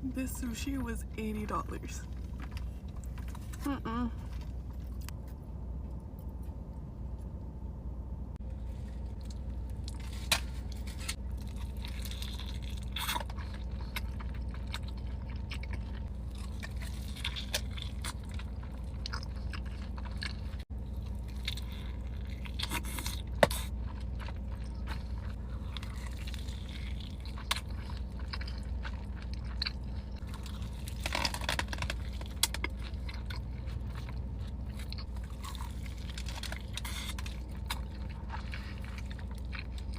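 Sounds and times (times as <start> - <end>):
steady low hum: 0.0 - 39.9
chewing and biting: 8.6 - 39.9.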